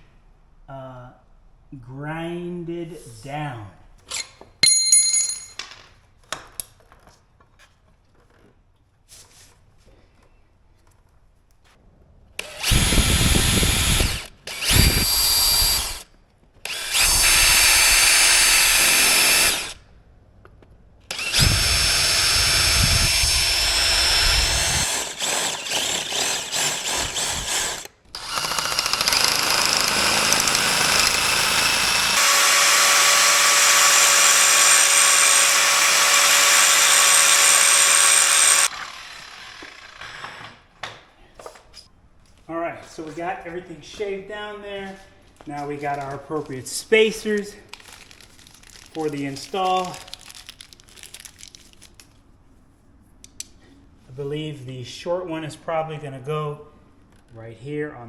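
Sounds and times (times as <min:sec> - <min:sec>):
power grinder grinding steel: 0:16.7 - 0:19.8, 0:21.1 - 0:40.4.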